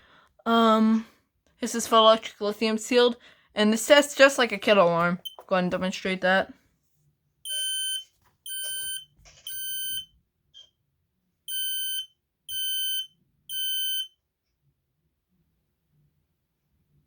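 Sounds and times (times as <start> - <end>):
smoke alarm high-pitched beeps: 5.2 - 5.5, 7.5 - 10.1, 11.5 - 14.2.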